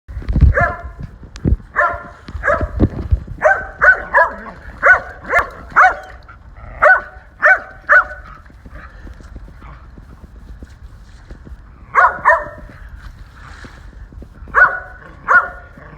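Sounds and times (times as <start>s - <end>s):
dog barking: 0.5s - 1.0s, 1.7s - 2.8s, 3.4s - 6.2s, 6.8s - 8.4s, 11.9s - 12.7s, 14.5s - 15.8s.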